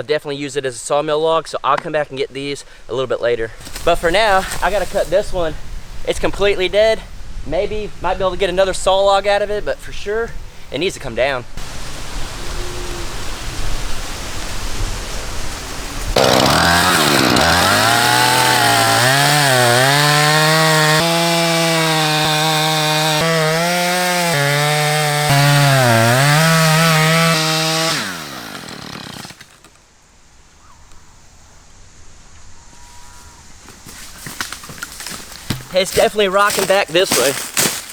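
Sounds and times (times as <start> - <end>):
chainsaw cutting wood: 16.1 - 29.8, 33.8 - 37.9.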